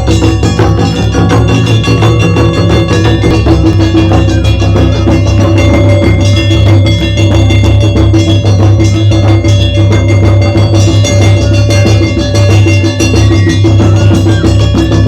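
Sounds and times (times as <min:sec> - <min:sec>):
other percussion: 0:00.0 - 0:15.0
taiko drums playing fast beat: 0:00.0 - 0:15.0.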